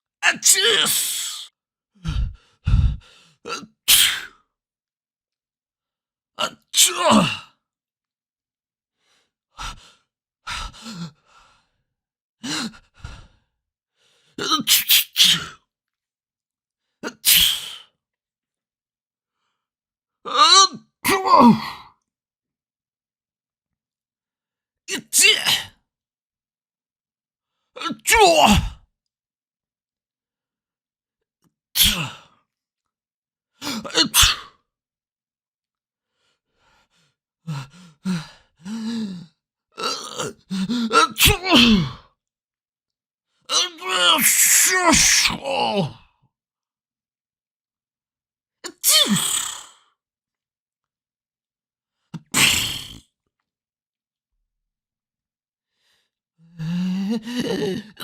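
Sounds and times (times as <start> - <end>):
voiced in-breaths: 0.3 - 4.3, 21.0 - 22.0
person sneezing: 3.9 - 4.3, 14.6 - 15.5, 17.2 - 17.8, 31.8 - 32.2, 34.0 - 34.5, 41.0 - 41.9, 48.7 - 49.7, 52.2 - 53.0.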